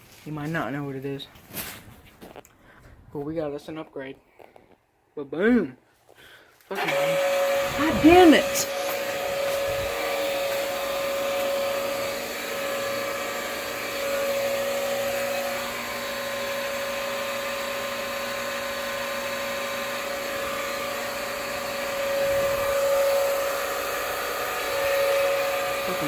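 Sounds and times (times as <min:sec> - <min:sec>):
small motor whirring: 0:06.8 - 0:26.0.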